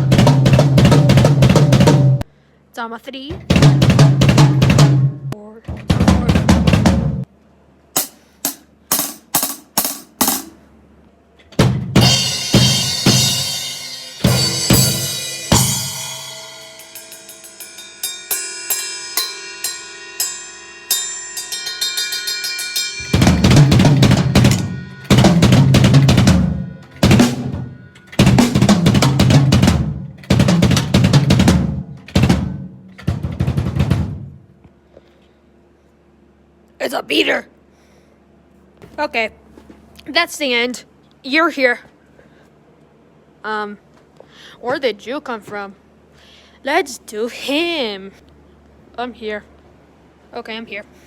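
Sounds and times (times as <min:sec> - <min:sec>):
tom drum struck: 0:03.3 - 0:07.3, 0:11.6 - 0:18.2, 0:21.5 - 0:34.4
cymbal crashing: 0:12.0 - 0:29.5.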